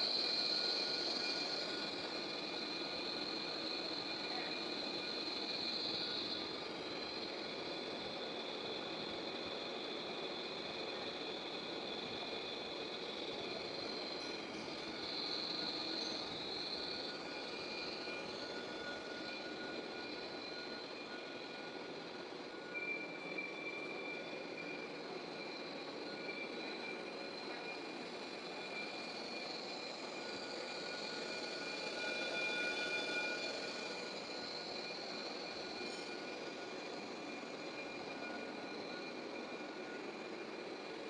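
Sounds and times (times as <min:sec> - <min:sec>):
metal lathe running: 0:13.7 - 0:22.4, 0:23.2 - 0:39.2.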